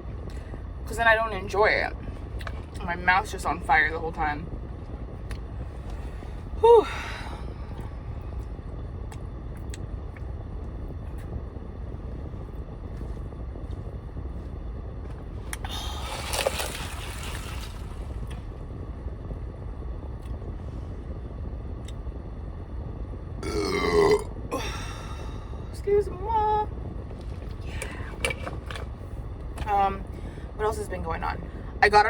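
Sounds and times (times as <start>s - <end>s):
car engine and air conditioning hum: 0.0s - 32.0s
person burping: 23.4s - 25.0s.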